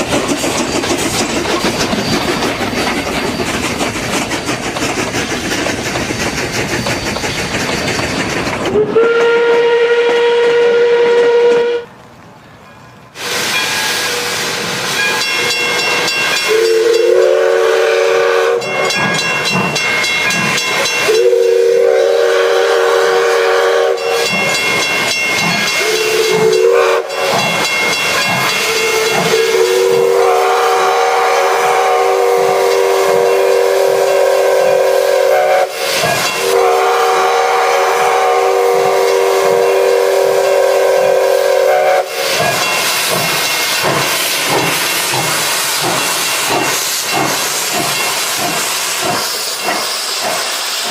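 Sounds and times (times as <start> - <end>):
steam hissing: 0.0 - 9.6, 13.2 - 50.9
steam locomotive whistle: 8.7 - 12.0, 13.2 - 19.2, 20.5 - 50.9.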